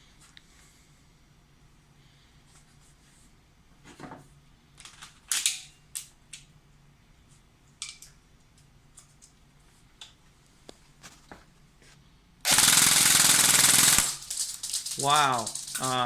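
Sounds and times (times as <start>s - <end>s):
gun handling clicks and knocks: 7.8s - 8.2s.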